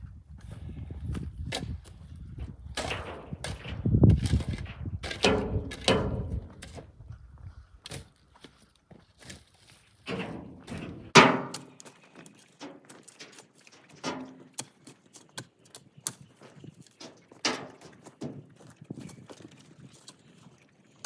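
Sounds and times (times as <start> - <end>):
knocks and thuds with brief ring: 11.2 - 11.7.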